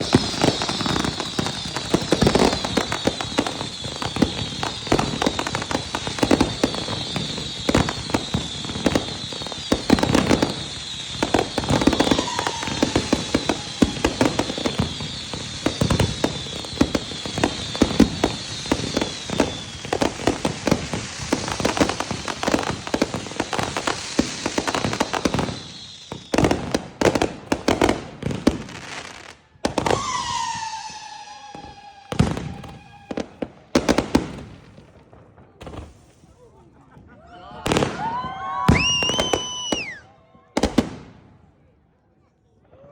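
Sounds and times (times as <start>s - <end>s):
fireworks bangs and crackle: 0.0s - 41.7s
high wavering whistle: 10.4s - 14.1s, 29.9s - 33.2s.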